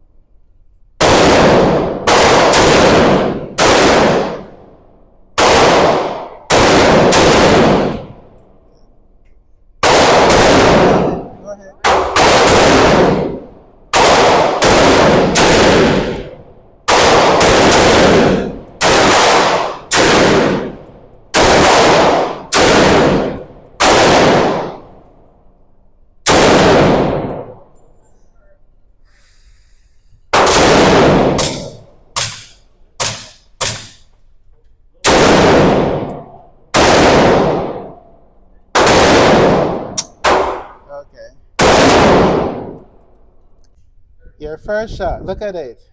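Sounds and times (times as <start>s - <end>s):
gunshots with long echo: 1.0s - 8.4s, 9.8s - 25.4s, 26.2s - 27.8s, 30.3s - 34.1s, 35.0s - 40.9s, 41.6s - 43.0s.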